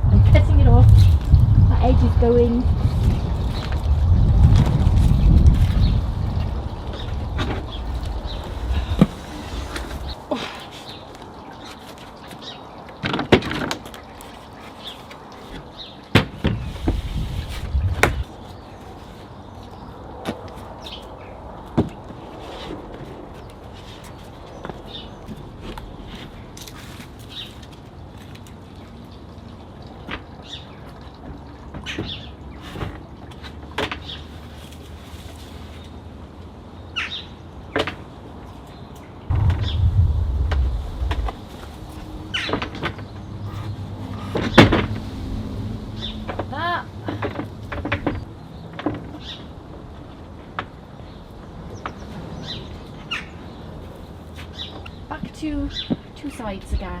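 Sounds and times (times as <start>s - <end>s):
loud low rumble: 39.3s - 42.4s.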